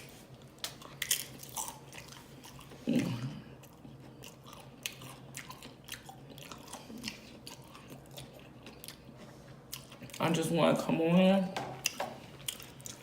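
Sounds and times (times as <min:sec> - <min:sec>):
chewing crisp tortilla chips: 0:00.0 - 0:10.6, 0:11.8 - 0:13.0.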